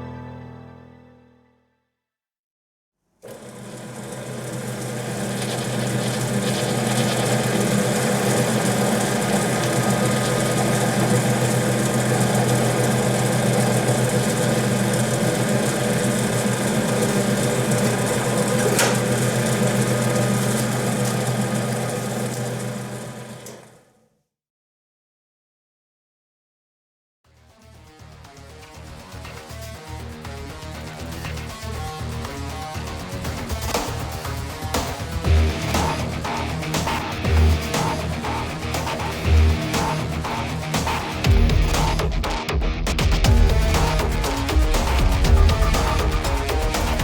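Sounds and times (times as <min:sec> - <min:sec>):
machine motor humming: 0:03.2 - 0:23.8, 0:33.4 - 0:47.0.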